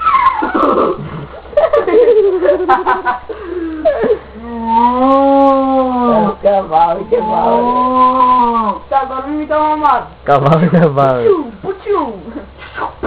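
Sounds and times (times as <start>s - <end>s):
child giggling: 0.0s - 4.6s
child imitating horse whinny: 4.4s - 6.3s, 7.1s - 8.8s.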